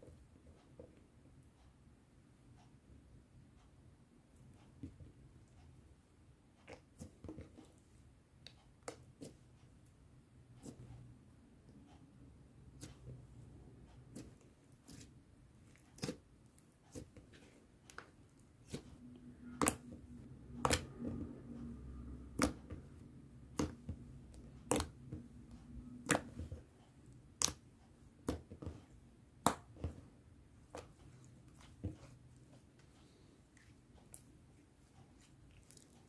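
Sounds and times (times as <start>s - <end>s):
slime clicking and popping: 22.4s - 22.7s.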